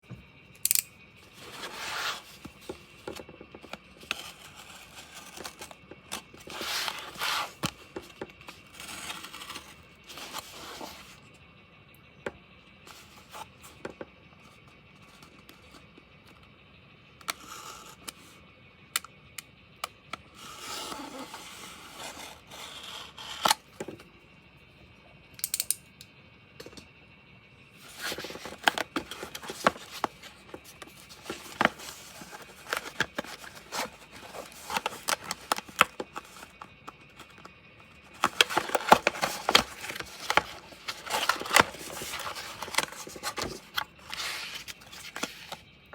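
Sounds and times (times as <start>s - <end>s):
packaging rustling and crinkling: 1.3s - 11.2s, 12.9s - 13.8s, 27.8s - 45.7s.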